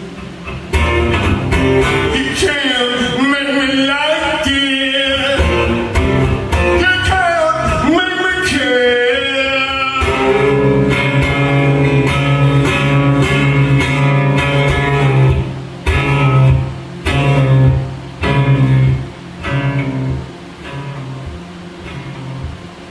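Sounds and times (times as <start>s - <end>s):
acoustic guitar strumming: 0.0s - 22.9s
person singing: 2.1s - 6.0s, 6.7s - 10.8s.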